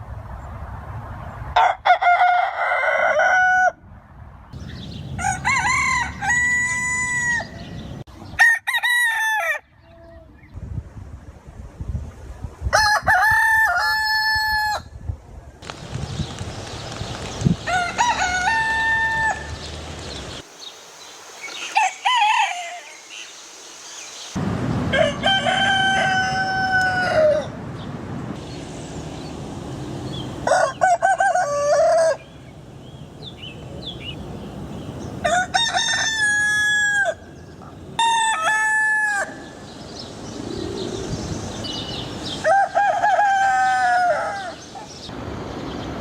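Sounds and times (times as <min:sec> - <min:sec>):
rooster crowing: 0:01.6 - 0:03.8, 0:05.2 - 0:07.8, 0:12.8 - 0:14.9, 0:17.6 - 0:19.7, 0:21.6 - 0:23.0, 0:24.9 - 0:27.6, 0:30.4 - 0:32.2, 0:35.2 - 0:37.3, 0:38.0 - 0:39.6, 0:42.4 - 0:44.7.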